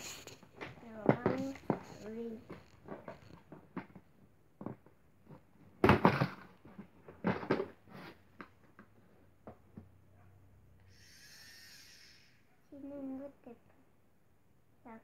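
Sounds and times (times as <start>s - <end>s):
toy box knocks and thuds: 0.6s - 8.6s.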